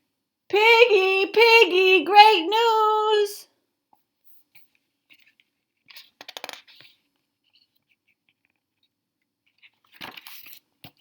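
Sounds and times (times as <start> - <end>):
paper crackling page turn: 9.6 - 11.0.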